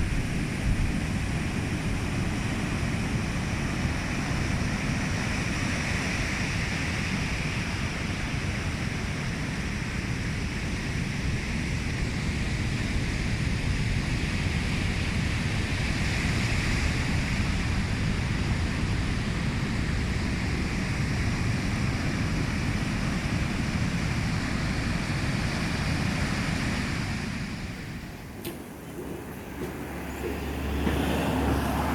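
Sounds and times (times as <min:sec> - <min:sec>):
surf washing onto beach: 0:25.3 - 0:31.9.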